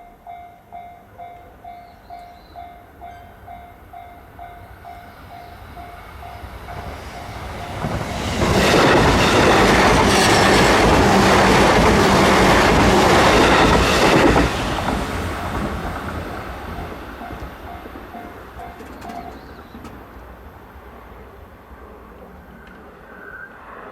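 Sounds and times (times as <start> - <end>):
crossing warning bell dinging: 0.0 - 20.2
train wheels clacking over rails: 5.8 - 20.3.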